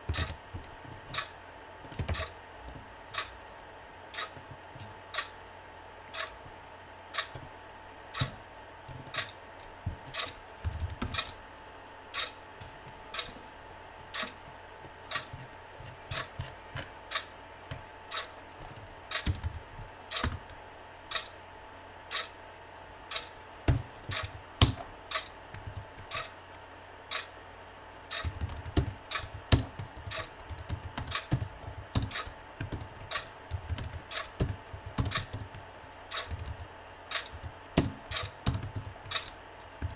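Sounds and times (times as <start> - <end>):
computer keyboard typing: 0.0 - 3.3, 9.0 - 11.4, 18.1 - 20.6, 23.1 - 26.7, 28.1 - 39.9
clock ticking: 23.1 - 26.3, 28.1 - 39.9.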